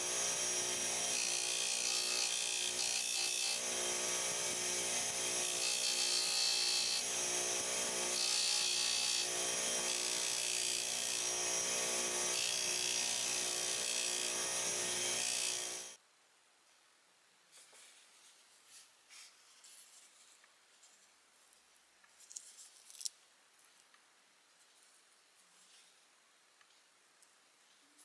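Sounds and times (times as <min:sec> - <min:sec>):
power tool motor running: 0:00.0 - 0:16.0.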